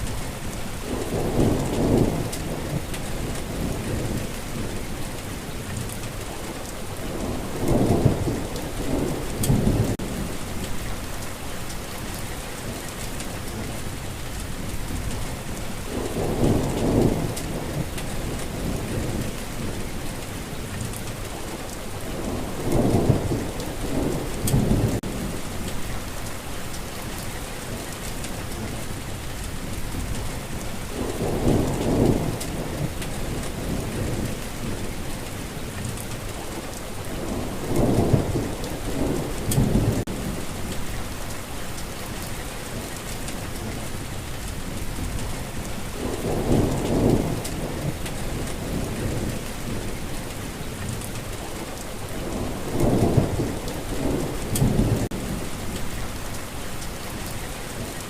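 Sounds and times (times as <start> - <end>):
low rolls of thunder: 0.0 - 5.0, 7.0 - 11.2, 14.7 - 21.2, 22.0 - 26.0, 28.3 - 41.3, 43.0 - 56.3
heavy rainfall: 0.0 - 58.0.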